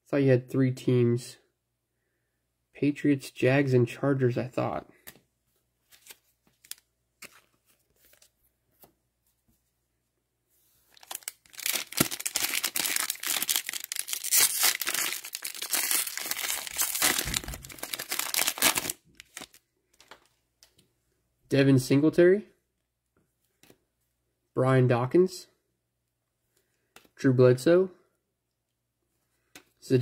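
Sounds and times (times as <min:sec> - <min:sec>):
foil wrapper tearing and crinkling: 0:10.9 - 0:19.6.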